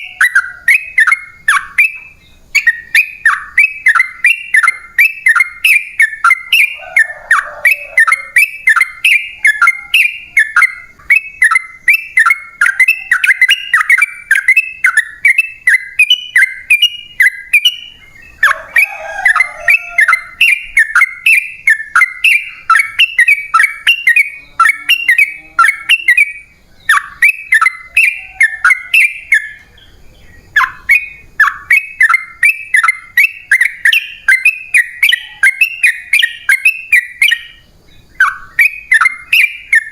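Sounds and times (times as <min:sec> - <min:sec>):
bulbul singing bubbly notes: 0:19.2 - 0:29.6.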